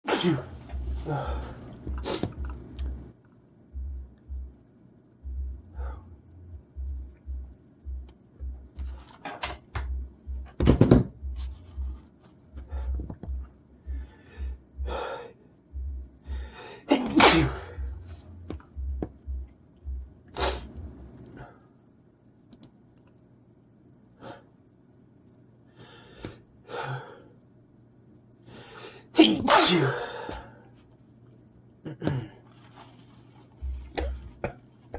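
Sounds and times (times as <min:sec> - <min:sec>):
man sneezing: 0:00.0 - 0:00.5, 0:16.8 - 0:17.8, 0:29.1 - 0:30.4
low irregular thudding: 0:09.8 - 0:12.0, 0:12.6 - 0:15.0, 0:17.6 - 0:21.1.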